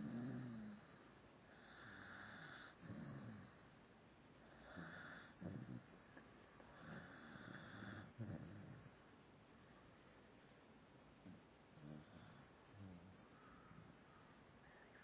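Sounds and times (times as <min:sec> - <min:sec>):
faint snoring: 0:00.0 - 0:03.8, 0:04.4 - 0:06.0, 0:06.7 - 0:09.0, 0:11.2 - 0:15.0.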